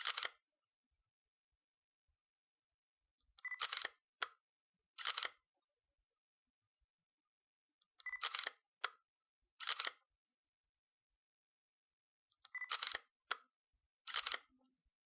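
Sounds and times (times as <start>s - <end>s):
camera shutter clicking: 0.0s - 0.3s, 14.1s - 14.4s.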